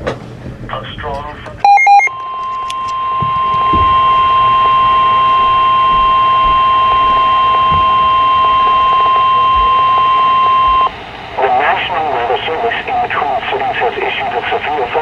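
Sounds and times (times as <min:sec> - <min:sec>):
loud high warning beep: 0:01.6 - 0:11.9
faint radio hiss: 0:07.5 - 0:15.0.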